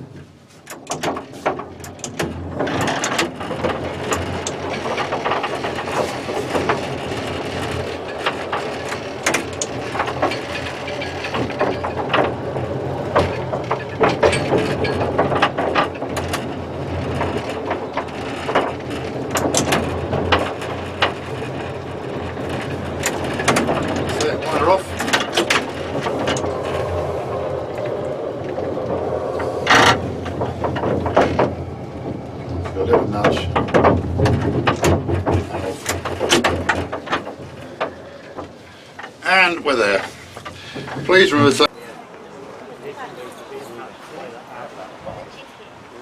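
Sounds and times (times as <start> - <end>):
electric railway vehicle humming: 0.0 - 46.0
train clicks and clanks: 0.0 - 46.0.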